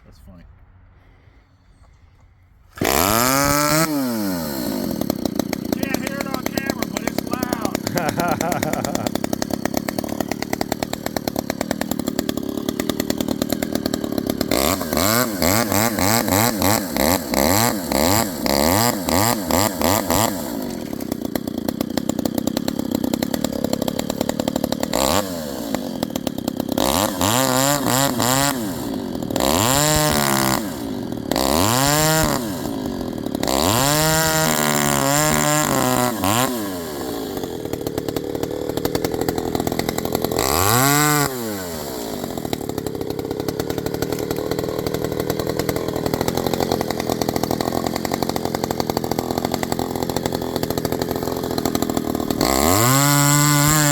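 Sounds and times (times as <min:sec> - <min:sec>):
chainsaw revving: 0:02.7 - 0:53.9.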